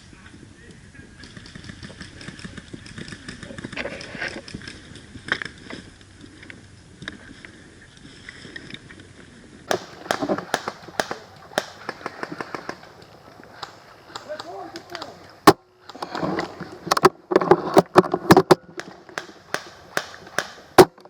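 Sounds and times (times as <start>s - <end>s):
crackling and rustling: 1.1s - 21.0s
airsoft gun firing: 9.7s - 15.6s, 18.4s - 21.0s
scattered clicks: 9.7s - 21.0s.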